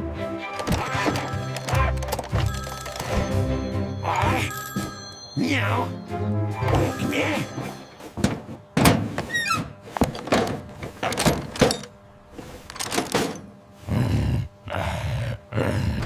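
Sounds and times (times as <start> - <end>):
knocks and thuds: 8.2 - 9.2.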